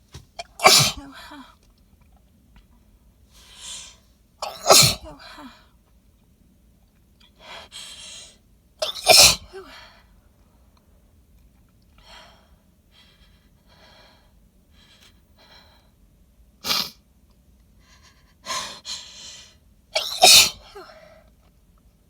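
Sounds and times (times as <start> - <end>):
woman sneezing into hands: 0.4 - 1.2, 4.4 - 5.2, 8.9 - 9.6, 20.0 - 20.8.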